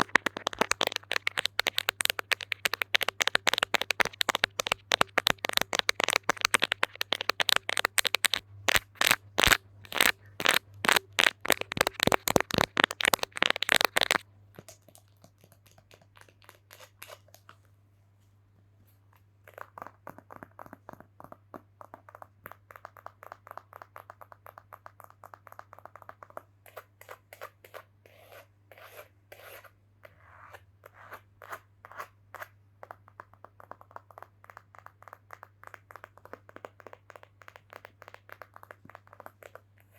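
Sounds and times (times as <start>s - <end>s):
rapid knocking and tapping: 0.0s - 14.2s.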